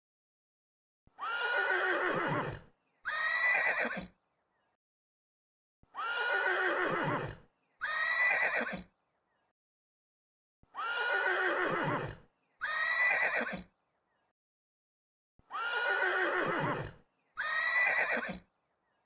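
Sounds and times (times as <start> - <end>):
horse whinnying: 1.2 - 4.1, 6.0 - 8.9, 10.8 - 13.7, 15.5 - 18.5.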